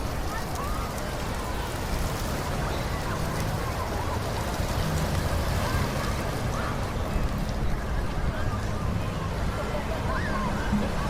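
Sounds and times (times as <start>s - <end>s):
distant people talking: 0.0s - 11.0s
outdoor background noise: 0.0s - 11.0s.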